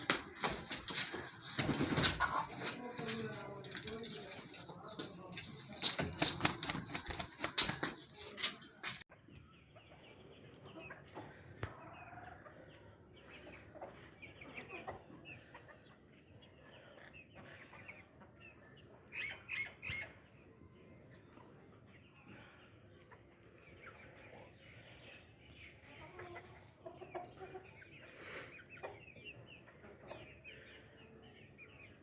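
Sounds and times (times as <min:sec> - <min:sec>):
chicken wings flapping: 0:00.0 - 0:09.0
chickens clucking: 0:00.0 - 0:09.1, 0:09.8 - 0:16.2, 0:25.6 - 0:31.1.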